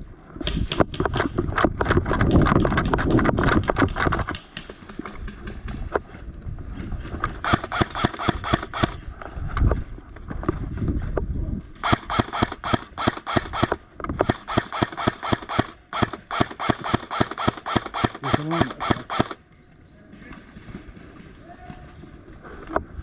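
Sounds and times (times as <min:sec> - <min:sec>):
airsoft guns firing rapidly: 0:07.4 - 0:09.0, 0:11.8 - 0:19.4.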